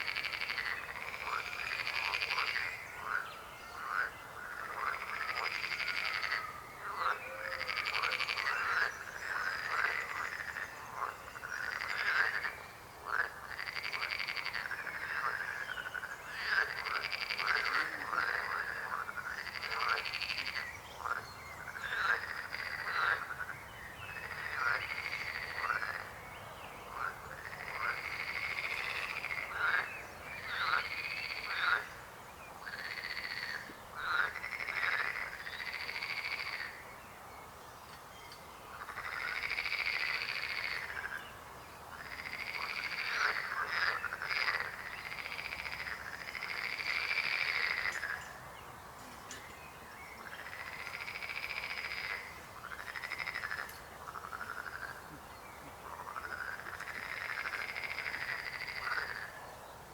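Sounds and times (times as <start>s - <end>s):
frogs croaking: 0.0s - 59.9s.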